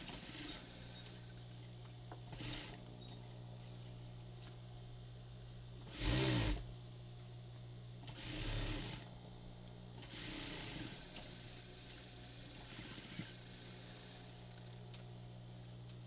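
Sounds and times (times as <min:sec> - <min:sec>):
steady low hum: 0:00.0 - 0:16.0
sewing machine stitching: 0:02.3 - 0:02.8, 0:05.9 - 0:06.6, 0:08.1 - 0:09.1, 0:10.0 - 0:11.4.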